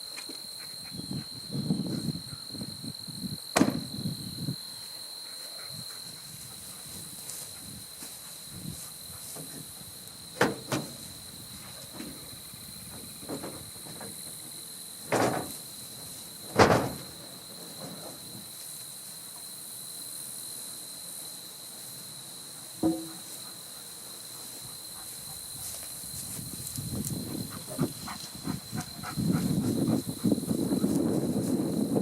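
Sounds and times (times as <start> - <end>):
crickets trilling: 0.0 - 32.0
sharp knocks: 3.6 - 3.9, 22.8 - 23.3.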